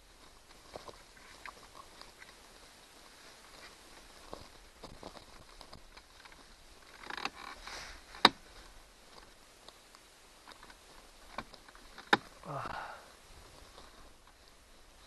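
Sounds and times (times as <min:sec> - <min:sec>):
plastic creaking and scraping: 0:04.2 - 0:09.8.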